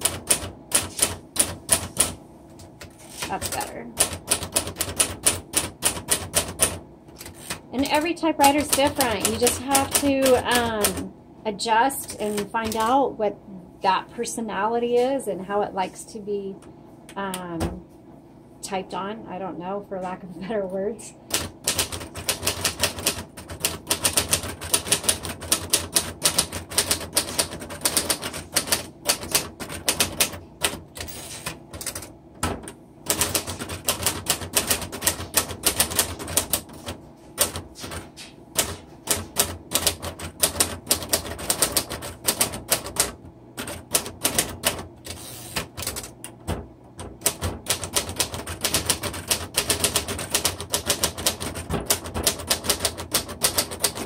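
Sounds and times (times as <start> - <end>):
manual typewriter typing: 0.0 - 2.2, 2.8 - 11.1, 12.0 - 13.0, 21.3 - 54.0.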